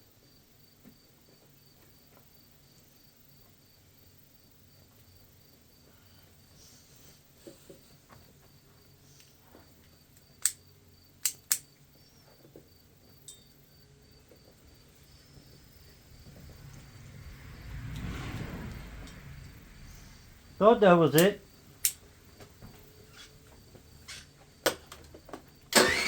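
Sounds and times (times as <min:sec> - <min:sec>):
cricket chirping: 0:00.0 - 0:26.0
sharp clicks: 0:10.2 - 0:10.6, 0:11.2 - 0:11.7, 0:21.1 - 0:22.0.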